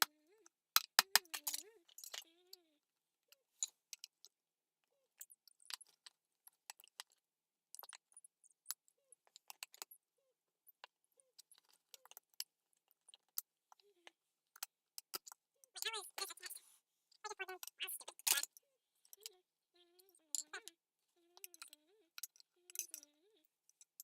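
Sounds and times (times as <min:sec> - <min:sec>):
small metal parts clinking: 0:22.2 - 0:23.1.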